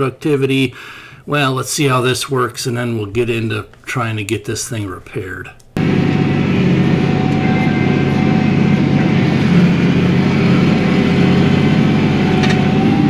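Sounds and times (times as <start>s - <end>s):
tractor diesel engine running: 5.8s - 13.0s.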